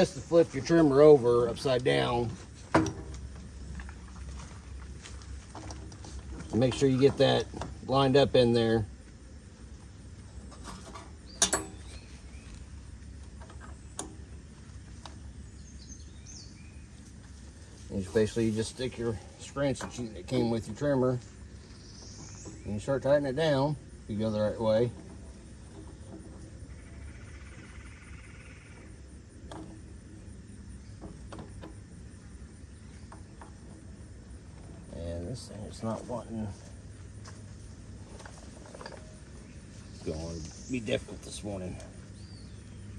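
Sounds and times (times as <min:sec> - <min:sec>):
metal parts clinking: 0:11.4 - 0:12.0.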